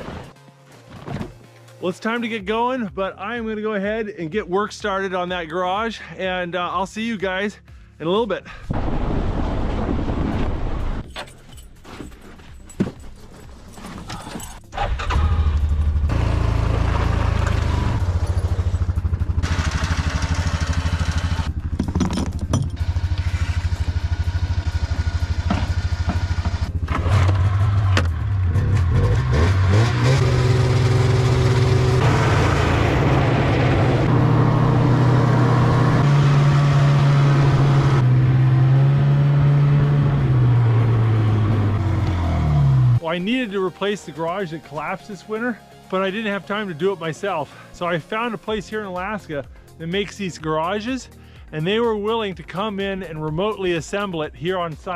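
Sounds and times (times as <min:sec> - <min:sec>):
vehicle engine running: 0:14.9 - 0:43.0.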